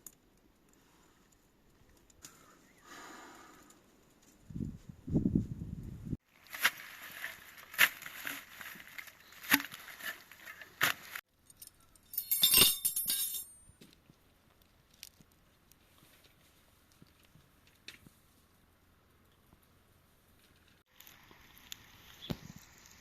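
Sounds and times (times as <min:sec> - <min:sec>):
jangling clatter: 0:11.5 - 0:13.6
sharp clinks and knocks: 0:11.5 - 0:13.7.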